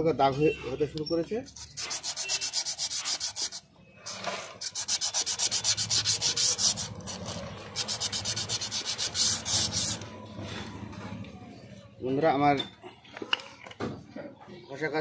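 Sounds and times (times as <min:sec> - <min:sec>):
sandpaper rubbing on metal drum: 0:01.4 - 0:10.0.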